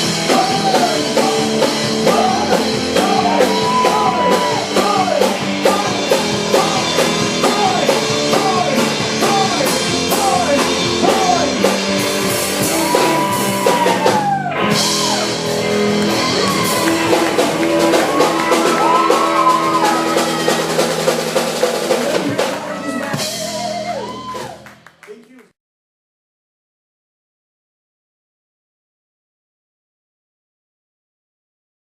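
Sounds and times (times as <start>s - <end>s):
rock band playing: 0.0s - 25.0s
person singing: 0.0s - 25.4s.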